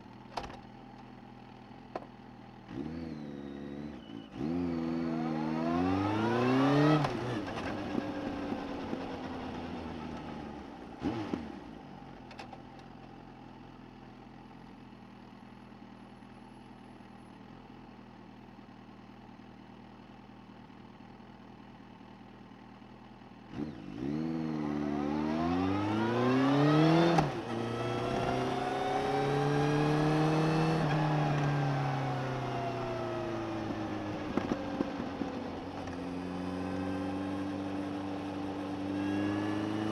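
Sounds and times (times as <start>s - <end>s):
motorcycle engine accelerating: 1.6s - 12.1s, 23.4s - 39.9s.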